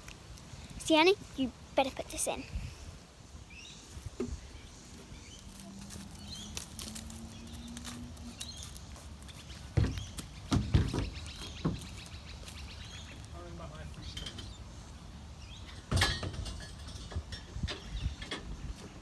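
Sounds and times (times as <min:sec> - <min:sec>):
sharp knocks: 0:09.8 - 0:11.9.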